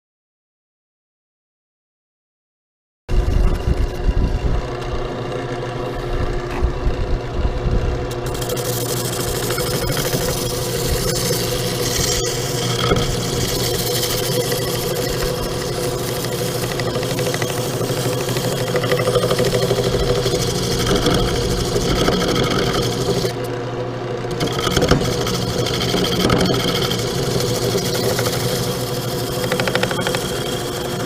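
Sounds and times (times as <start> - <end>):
wood lathe motor running: 3.2 - 31.0
sandpaper rubbing spinning wood: 8.2 - 23.6, 24.2 - 31.0.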